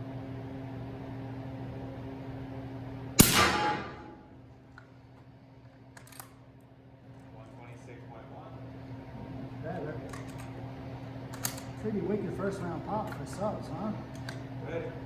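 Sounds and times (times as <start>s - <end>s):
steady hum: 3.0s - 4.7s
suppressed rifle shot: 3.2s - 4.3s.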